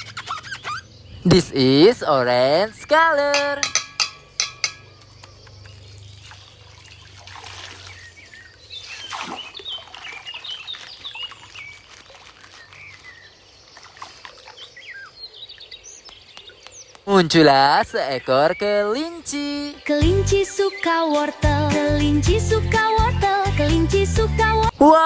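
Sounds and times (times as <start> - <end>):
water trickling and gurgling: 5.1 - 16.0
plastic crackling: 9.9 - 13.6.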